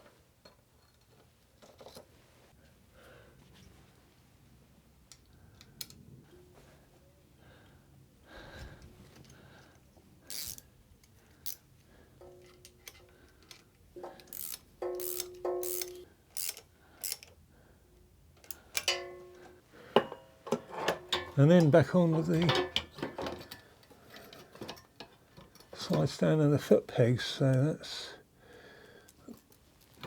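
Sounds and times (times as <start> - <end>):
tools clinking on metal parts: 12.2 - 17.3, 18.4 - 26.1.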